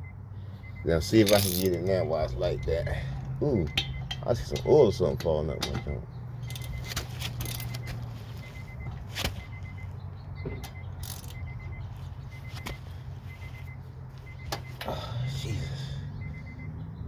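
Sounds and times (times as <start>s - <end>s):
ratchet clicking: 1.2s - 1.9s, 6.4s - 7.9s, 10.6s - 11.6s.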